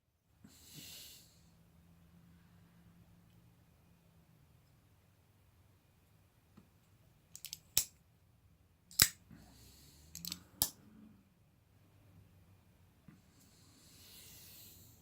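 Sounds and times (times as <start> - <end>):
folding knife clicks: 7.3 - 8.0, 8.9 - 9.2, 10.1 - 10.8
knife blade snapping open: 7.4 - 7.9, 8.9 - 9.2.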